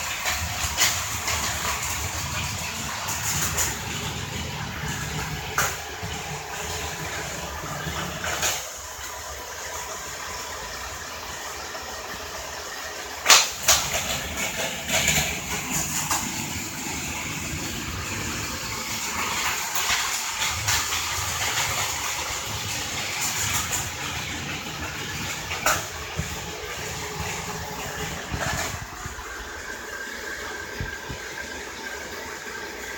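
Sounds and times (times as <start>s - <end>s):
toy train motor whir: 13.2s - 29.2s.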